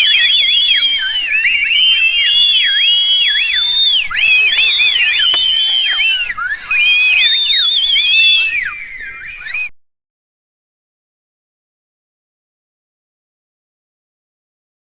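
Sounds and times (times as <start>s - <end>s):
crowd whistling: 0.0s - 9.7s.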